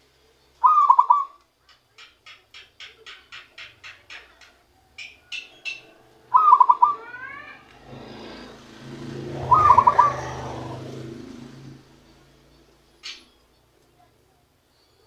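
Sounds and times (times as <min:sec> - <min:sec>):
dove cooing: 0:00.6 - 0:01.4, 0:03.4 - 0:12.3.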